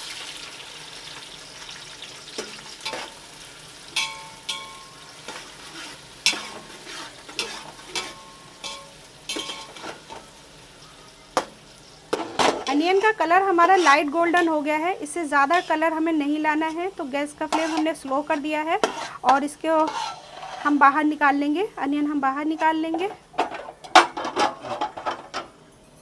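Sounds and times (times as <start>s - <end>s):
onions sizzling in hot oil: 0.0s - 24.0s
metal spoon clinking against pot: 4.0s - 5.4s, 6.2s - 10.2s.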